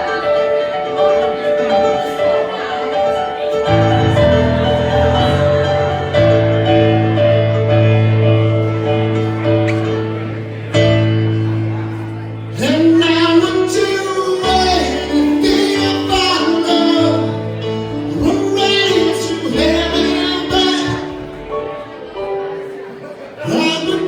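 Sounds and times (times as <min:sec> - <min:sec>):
person singing: 0:00.0 - 0:08.3, 0:12.5 - 0:21.5, 0:23.4 - 0:24.0
keyboard chords: 0:00.0 - 0:24.0
steady bass note: 0:03.8 - 0:08.5.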